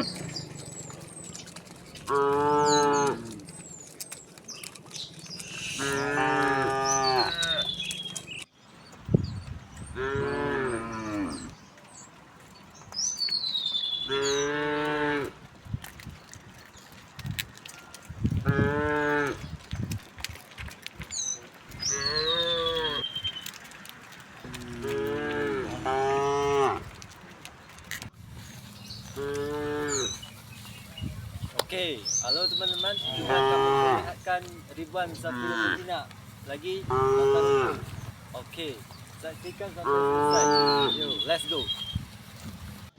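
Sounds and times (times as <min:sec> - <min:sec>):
cows mooing: 0:00.0 - 0:03.6, 0:05.4 - 0:08.2, 0:10.0 - 0:11.6, 0:14.0 - 0:15.4, 0:18.4 - 0:19.4, 0:21.8 - 0:23.3, 0:24.4 - 0:27.0, 0:29.0 - 0:30.7, 0:31.8 - 0:41.9.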